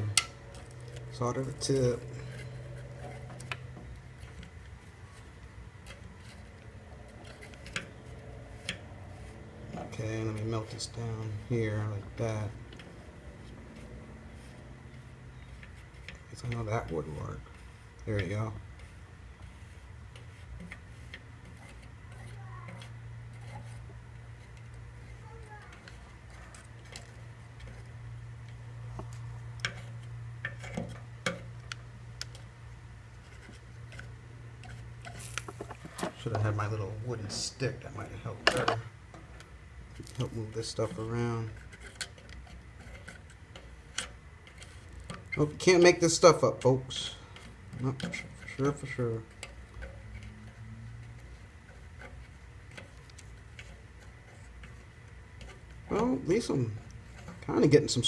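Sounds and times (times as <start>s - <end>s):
steady low hum: 0.0s - 58.0s
sharp soldering ticks: 35.0s - 35.7s.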